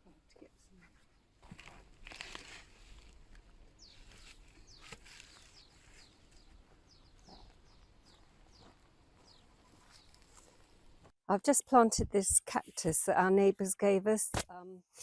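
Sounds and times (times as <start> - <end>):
small birds chirping: 3.8 - 10.8.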